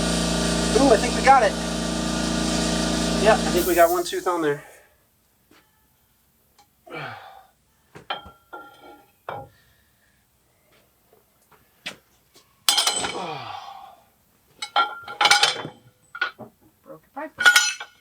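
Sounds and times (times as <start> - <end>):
wrench clanking on metal: 12.7 - 13.2, 14.6 - 16.4, 17.4 - 18.0.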